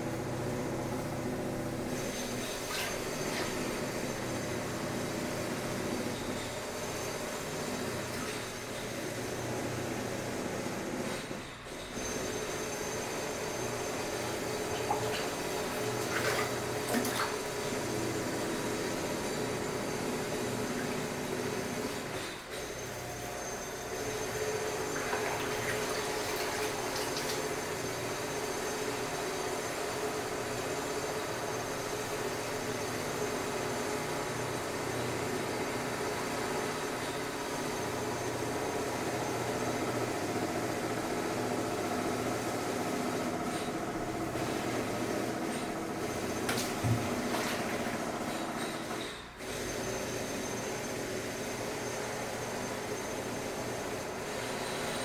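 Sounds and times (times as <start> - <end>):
construction machinery humming: 0.0 - 32.6.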